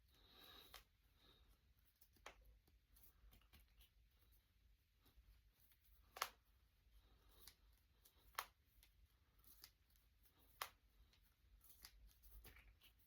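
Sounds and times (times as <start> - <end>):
knuckles cracking: 6.1 - 6.4, 7.4 - 9.8, 10.4 - 10.9.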